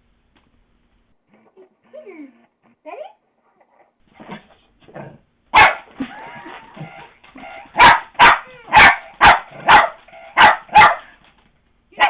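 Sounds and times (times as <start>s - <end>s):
puppy barking: 5.5s - 6.0s, 7.4s - 11.2s.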